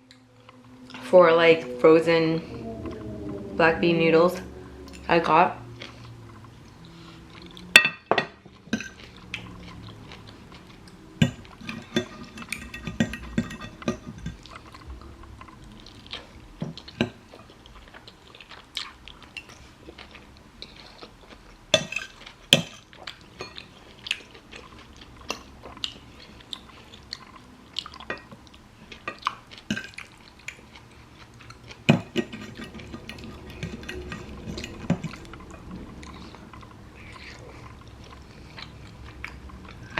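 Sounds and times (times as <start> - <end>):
chewing: 4.4 - 39.9
utensils clinking on a dish: 7.8 - 9.9, 11.2 - 14.8, 21.8 - 23.7, 31.8 - 36.3.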